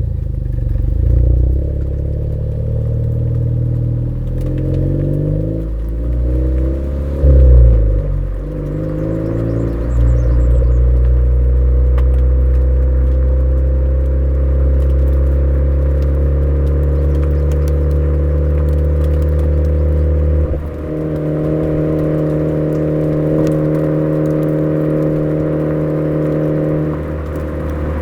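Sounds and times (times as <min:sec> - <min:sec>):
car engine cruising: 0:00.0 - 0:28.0.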